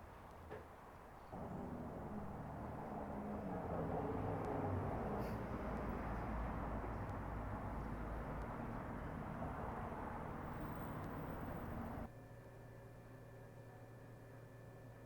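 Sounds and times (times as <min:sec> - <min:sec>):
vehicle engine humming: 0:01.3 - 0:12.1.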